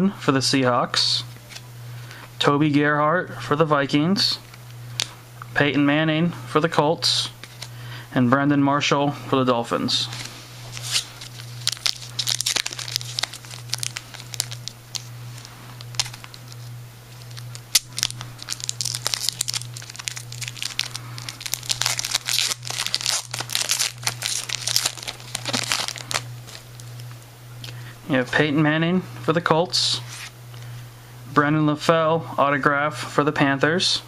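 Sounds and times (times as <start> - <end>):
foil wrapper tearing and crinkling: 10.2 - 27.0.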